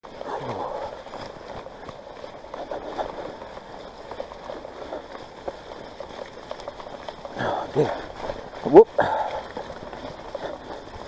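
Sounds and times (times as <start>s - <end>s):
bike rattling: 0.0s - 11.0s
bike tyres through mud: 0.0s - 11.0s.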